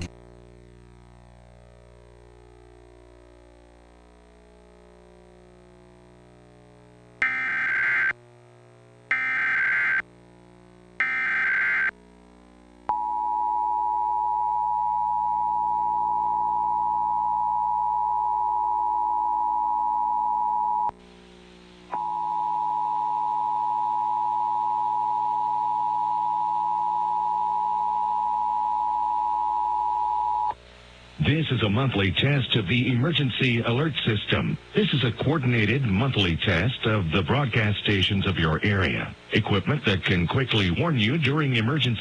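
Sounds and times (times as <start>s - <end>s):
screeching digital header bursts: 11.0s - 11.9s.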